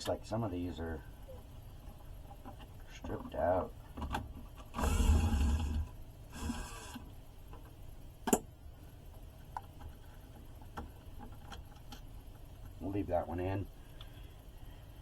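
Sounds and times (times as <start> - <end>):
cordless drill running: 4.8 - 7.0.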